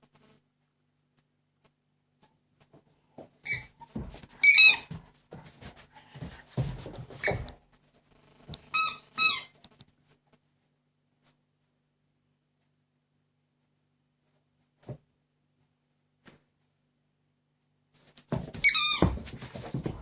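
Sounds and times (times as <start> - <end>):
dog toy squeaking: 3.4 - 3.8, 4.4 - 4.9, 8.7 - 9.6, 18.6 - 19.2.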